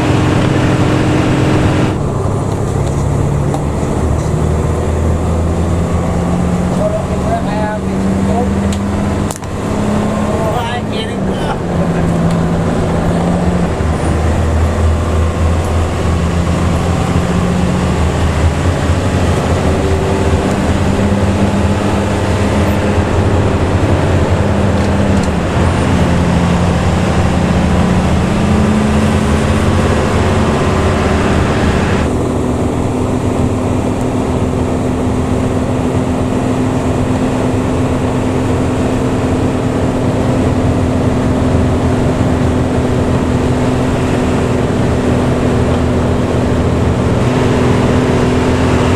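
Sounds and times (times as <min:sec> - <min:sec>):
bus diesel engine and exhaust: 0:00.0 - 0:48.9.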